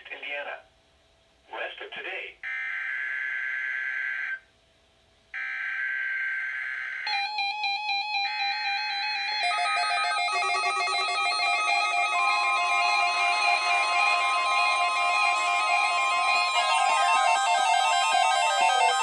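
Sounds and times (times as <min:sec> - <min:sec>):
electronic square-wave melody: 0:07.1 - 0:19.0.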